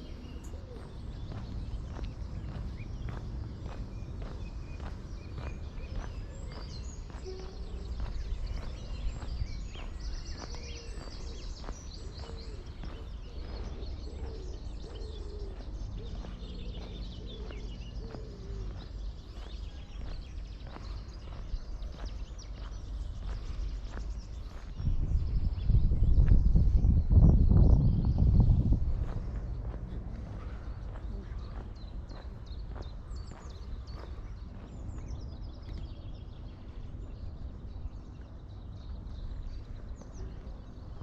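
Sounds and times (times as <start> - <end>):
birds chirping and trilling: 0.0 - 41.0
low steady rumble: 0.0 - 41.0
footsteps walking: 0.2 - 25.6, 28.4 - 35.9.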